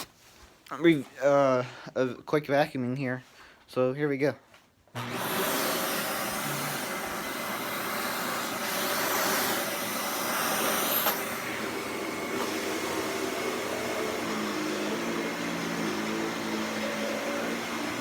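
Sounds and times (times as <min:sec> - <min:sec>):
vacuum cleaner running: 0:05.0 - 0:18.0.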